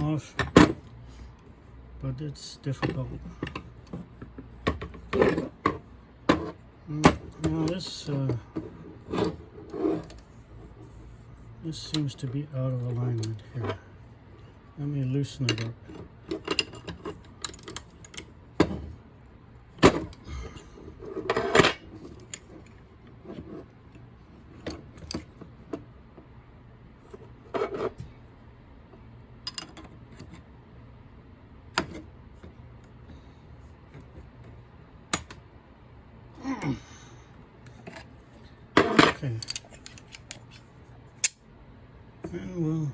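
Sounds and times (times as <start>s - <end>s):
metal tool parts clinking: 38.8s - 40.6s.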